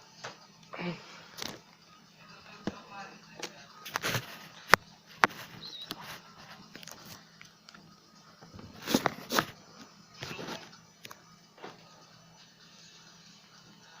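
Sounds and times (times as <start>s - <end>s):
crackling rustles of tape: 3.8s - 7.8s, 8.7s - 9.6s, 10.2s - 11.8s.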